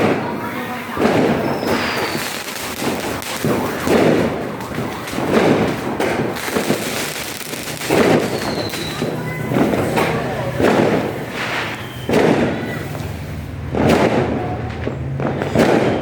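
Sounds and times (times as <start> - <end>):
fireworks booming: 0.0 - 16.0
falling firework whistle: 1.0 - 9.8, 10.6 - 13.3.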